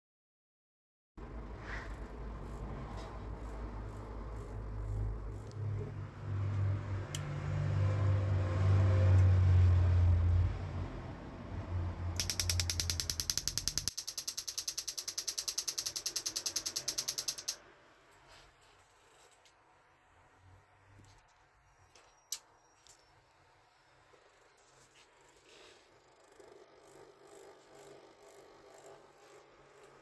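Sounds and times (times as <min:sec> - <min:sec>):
ignition electrode sparking ticks: 0:12.2 - 0:17.6.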